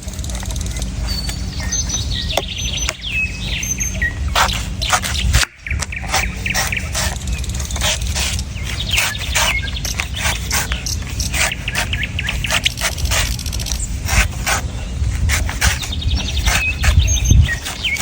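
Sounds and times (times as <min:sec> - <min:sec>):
birds chirping: 0:00.0 - 0:18.0
knife chopping coconuts: 0:04.3 - 0:14.6.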